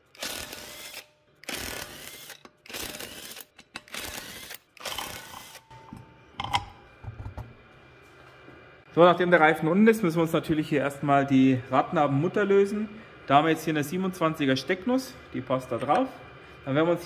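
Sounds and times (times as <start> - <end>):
power wrench spinning bolts: 0.1 - 6.6.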